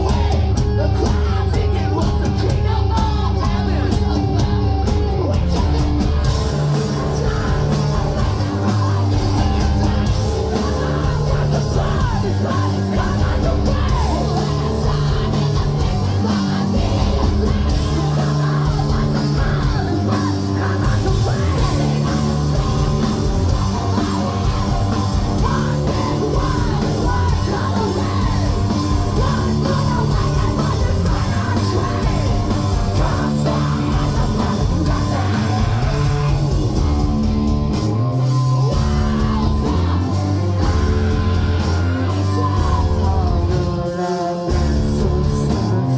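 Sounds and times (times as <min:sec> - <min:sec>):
rock band playing live: 0:00.0 - 0:45.9.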